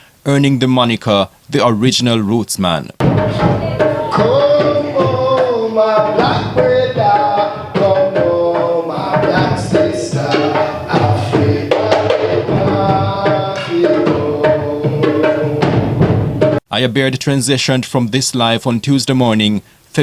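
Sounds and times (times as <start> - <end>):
gliding melody line: 3.0 - 8.0
hand drumming: 3.0 - 16.6.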